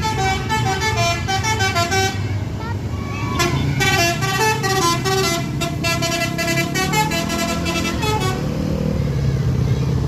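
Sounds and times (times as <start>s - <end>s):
bus horn playing a tune: 0.0s - 2.4s, 3.4s - 8.6s
bus engine rumble: 0.0s - 10.0s.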